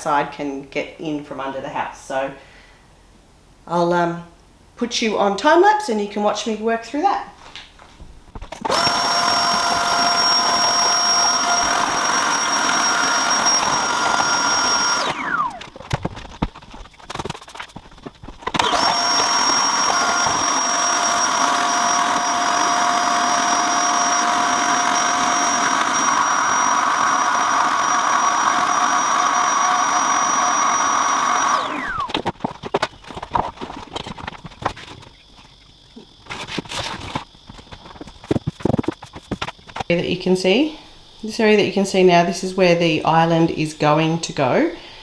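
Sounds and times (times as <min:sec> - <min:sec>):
vacuum cleaner motor whining: 0:08.6 - 0:16.4, 0:18.4 - 0:32.4, 0:41.3 - 0:44.5.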